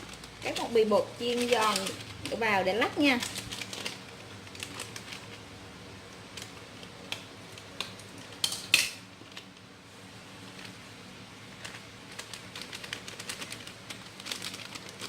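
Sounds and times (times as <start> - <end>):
scissors cutting plastic packet: 0.0 - 5.4, 11.6 - 15.0.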